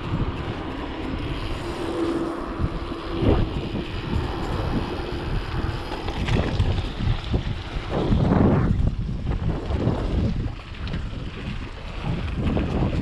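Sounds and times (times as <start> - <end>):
mountain bike rattling over bumps: 0.0 - 13.0
wind buffeting microphone: 0.0 - 13.0.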